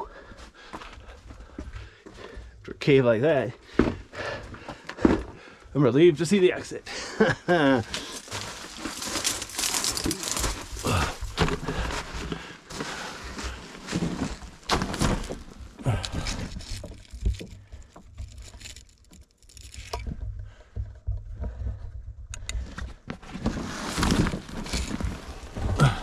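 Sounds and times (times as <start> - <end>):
scrambling over rough rock: 7.2 - 26.0.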